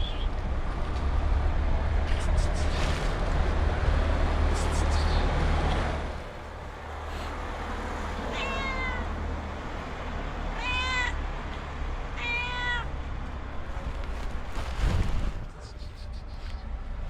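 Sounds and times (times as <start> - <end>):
cat meowing: 8.1 - 9.2, 10.5 - 11.3, 12.2 - 13.0.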